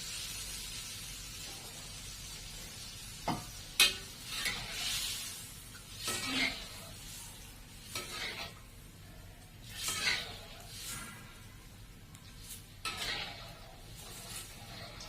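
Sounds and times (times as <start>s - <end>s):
low steady hiss: 0.0s - 15.0s
spatula scraping cooking pan: 3.4s - 8.7s, 9.6s - 11.5s, 12.2s - 15.0s.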